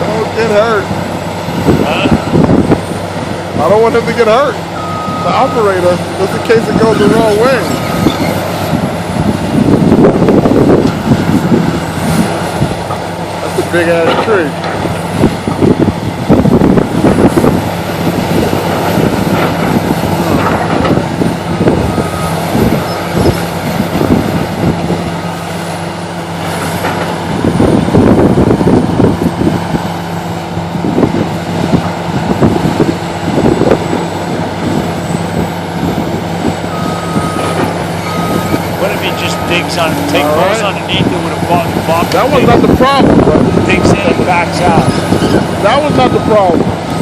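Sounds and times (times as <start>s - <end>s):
excavator diesel engine: 0.0s - 47.0s
hydraulic whine: 0.0s - 47.0s
backup alarm beeping: 4.8s - 5.8s, 7.0s - 8.4s, 36.7s - 41.1s, 43.7s - 46.3s.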